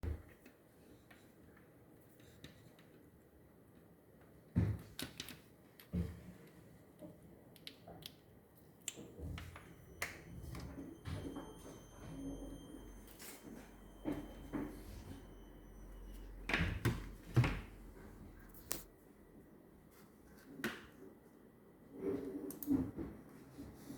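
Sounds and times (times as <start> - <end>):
faint steady high tones: 9.1 - 18.5.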